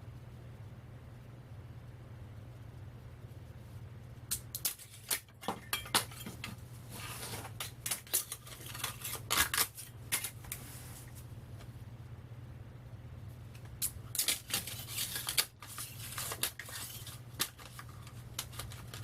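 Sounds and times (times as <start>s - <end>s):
metal sheets clinking and scraping: 4.6s - 10.4s, 14.1s - 19.0s.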